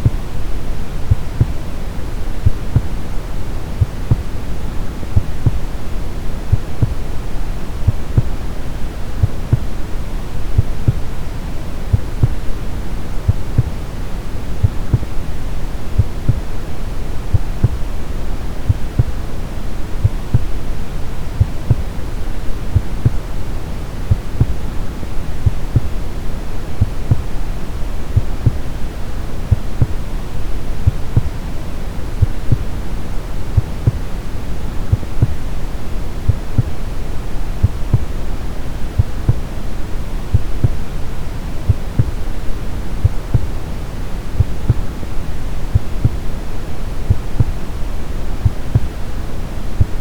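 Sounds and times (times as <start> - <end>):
heartbeat thuds: 1.0 - 1.6, 2.3 - 3.0, 3.8 - 5.8, 6.4 - 7.1, 7.7 - 8.4, 9.2 - 9.8, 10.6 - 11.1, 11.9 - 12.6, 14.6 - 15.1, 15.9 - 17.9, 18.7 - 19.3, 20.0 - 20.7, 21.4 - 21.9, 22.7 - 23.3, 24.1 - 24.8, 25.4 - 26.0, 26.8 - 27.4, 28.1 - 28.8, 29.5 - 30.0, 30.8 - 31.4, 32.2 - 32.8, 33.6 - 34.1, 34.9 - 35.5, 36.3 - 36.9, 37.6 - 38.2, 39.0 - 39.5, 40.3 - 40.9, 41.7 - 42.3, 43.0 - 43.6, 44.4 - 45.0, 45.7 - 46.3, 47.0 - 47.6, 48.4 - 49.0.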